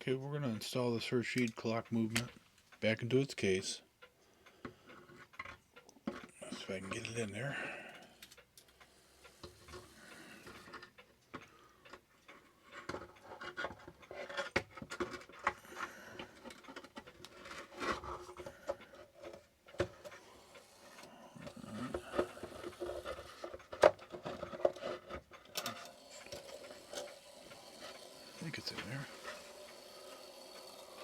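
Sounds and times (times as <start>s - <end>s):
clock movement knocking and clicking: 9.2s - 31.0s.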